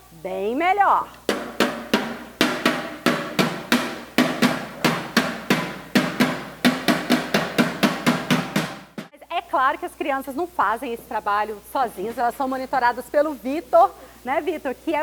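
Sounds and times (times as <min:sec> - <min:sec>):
drumming on metal cans: 0:01.3 - 0:09.1.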